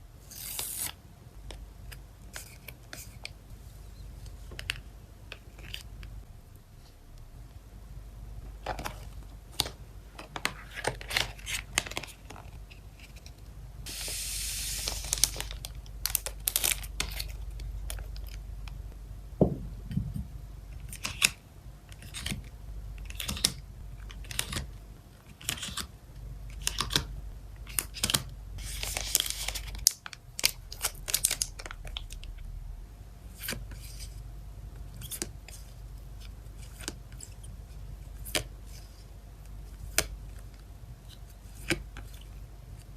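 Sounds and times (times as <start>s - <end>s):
packaging tearing and rustling: 13.9s - 18.1s, 27.7s - 32.2s.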